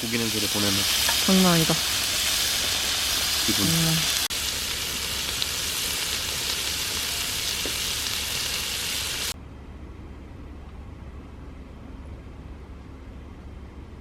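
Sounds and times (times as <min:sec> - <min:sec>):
pork sizzling on a grill pan: 0:00.0 - 0:09.4
low steady hum: 0:03.6 - 0:14.0.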